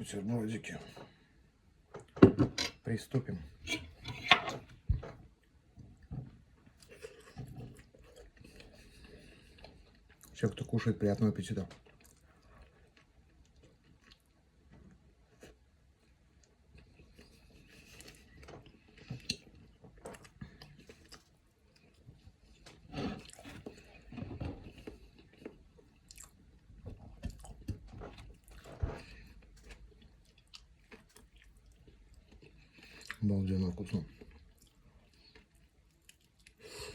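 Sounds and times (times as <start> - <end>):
person chewing crunchy food: 11.8 - 33.3, 33.9 - 36.9.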